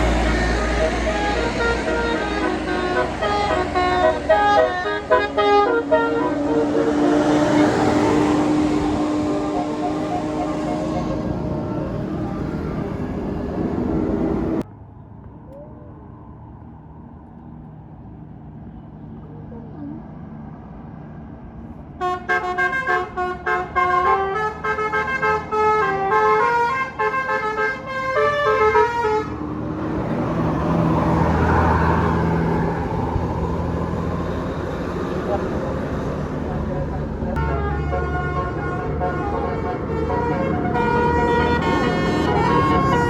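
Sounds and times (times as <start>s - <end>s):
musical bus horn tune: 0.0s - 13.2s, 22.0s - 29.5s, 37.4s - 43.0s.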